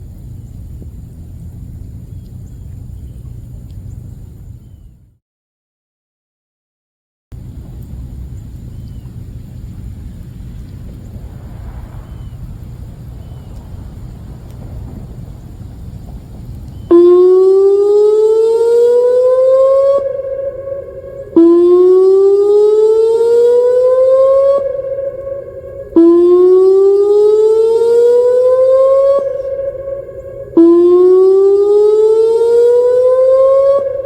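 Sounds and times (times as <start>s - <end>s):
warning siren whooping: 10.7s - 34.0s.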